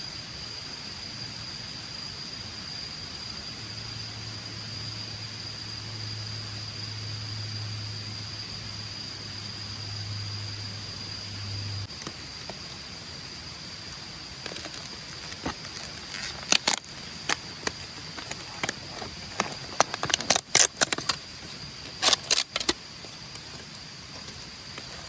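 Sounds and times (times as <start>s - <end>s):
sharp clicks and snaps: 13.9s - 25.0s.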